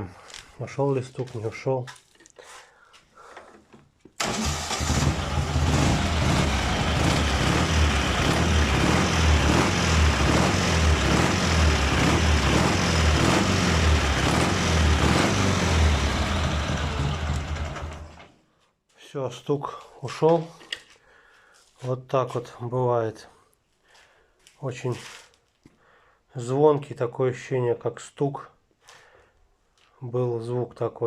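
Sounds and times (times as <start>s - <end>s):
motorcycle engine running: 5.0s - 18.2s.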